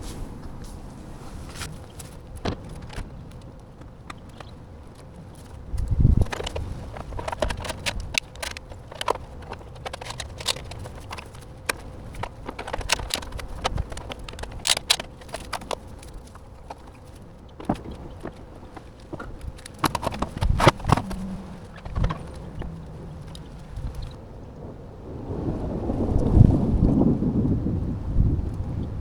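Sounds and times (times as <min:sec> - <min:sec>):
foam boards clicking and creaking: 0:01.5 - 0:24.2.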